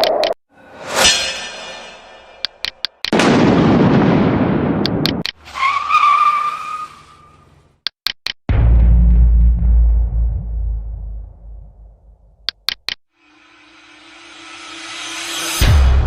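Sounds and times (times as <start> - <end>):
quick clicks: 12.4 - 13.0.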